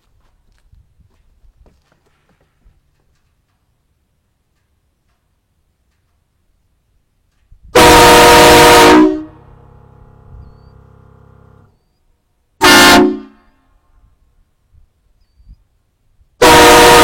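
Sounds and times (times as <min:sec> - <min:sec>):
train horn chord blasts: 0:07.8 - 0:11.7, 0:12.6 - 0:13.9, 0:16.4 - 0:17.0.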